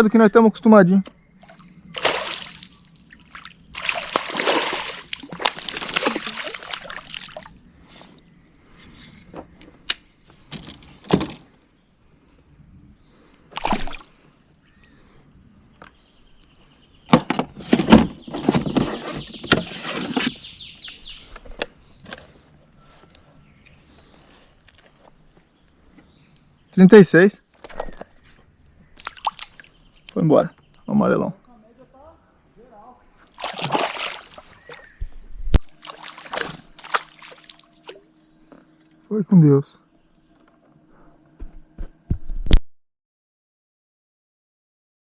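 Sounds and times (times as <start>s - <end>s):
water splashing and sloshing: 1.4s - 8.2s, 13.5s - 14.7s, 28.9s - 29.8s, 33.2s - 38.2s.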